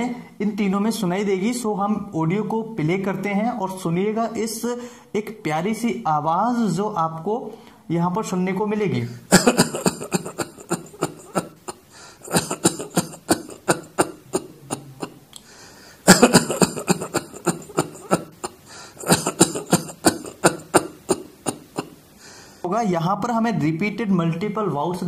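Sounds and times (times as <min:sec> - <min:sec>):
short crackly coughs: 0:09.3 - 0:15.2, 0:16.1 - 0:22.0.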